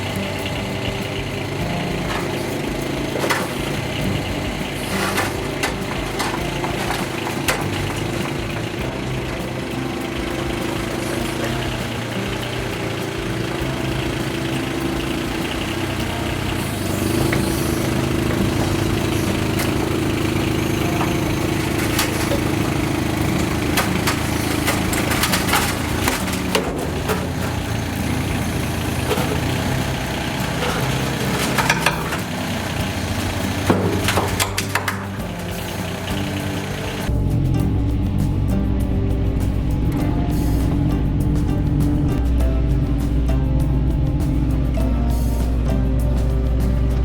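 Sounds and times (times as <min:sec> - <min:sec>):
sharp metal knocks and clanks: 0:00.0 - 0:37.1
excavator diesel engine running: 0:00.0 - 0:47.0.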